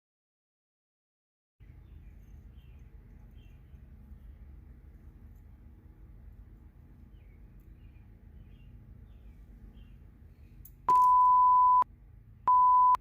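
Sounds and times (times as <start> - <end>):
faint low hum: 1.6 - 13.0
electronic beep: 10.9 - 11.8, 12.5 - 13.0.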